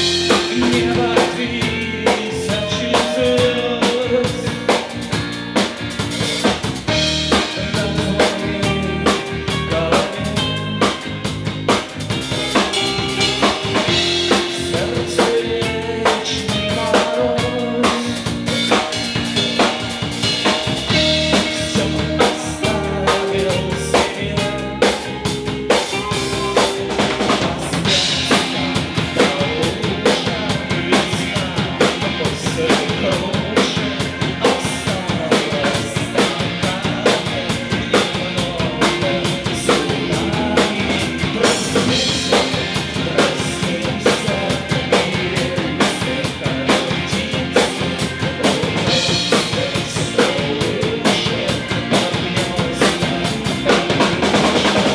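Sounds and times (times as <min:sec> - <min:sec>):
drum kit beat: 0:00.0 - 0:54.9
live band playing instrumental: 0:00.0 - 0:54.9.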